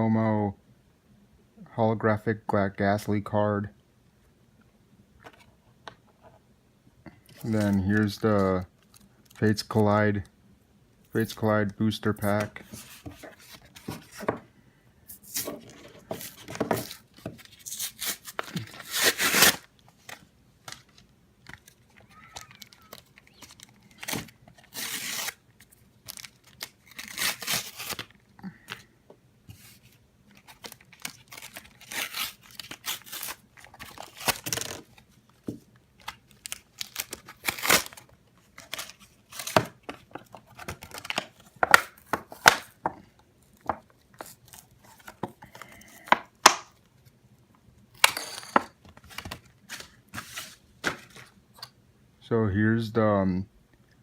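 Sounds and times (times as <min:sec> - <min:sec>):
card packaging tearing and crinkling: 0:12.1 - 0:14.3, 0:15.1 - 0:28.9, 0:29.6 - 0:35.4, 0:36.0 - 0:42.8, 0:48.0 - 0:51.3.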